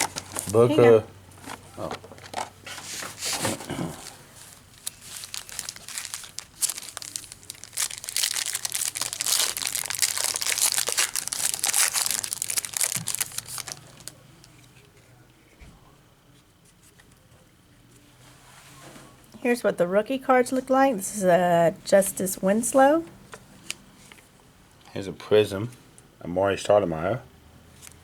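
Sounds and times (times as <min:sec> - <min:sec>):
foil wrappers tearing and crinkling: 0:00.0 - 0:00.6, 0:04.1 - 0:14.2.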